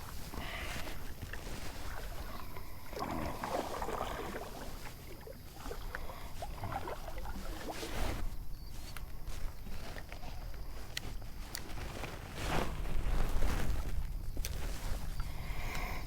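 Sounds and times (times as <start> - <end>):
water splashing around kayak: 0.0 - 10.0.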